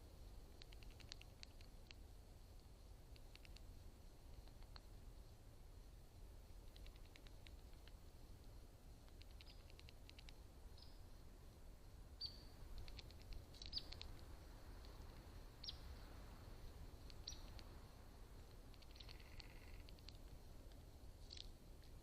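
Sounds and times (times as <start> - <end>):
small birds chirping: 0.5 - 2.0, 3.0 - 5.0, 6.5 - 8.0, 9.0 - 11.2, 12.2 - 16.0, 17.0 - 21.5
light clicks: 2.6 - 3.7.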